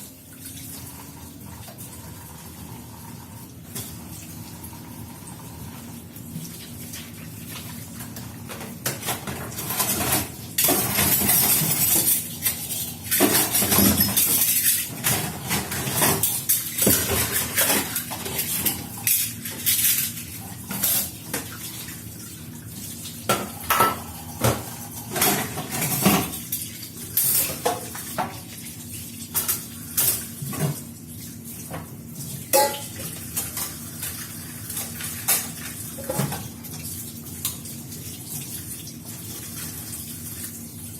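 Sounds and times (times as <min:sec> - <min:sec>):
dishes and cutlery clinking: 0:08.9 - 0:21.5, 0:32.5 - 0:33.8, 0:34.8 - 0:36.5.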